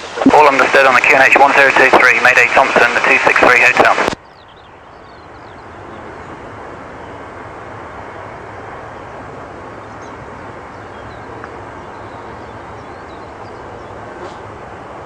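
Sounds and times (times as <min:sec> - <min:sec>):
jet engine roar: 0:00.0 - 0:04.1.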